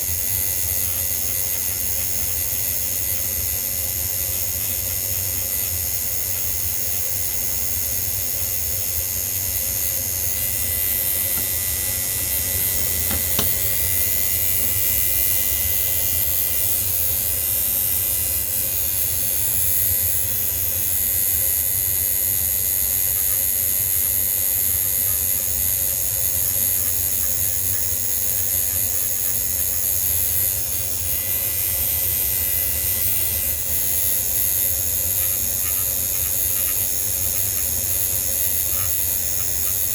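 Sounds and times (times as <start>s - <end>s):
mechanical hiss: 10.2s - 18.0s.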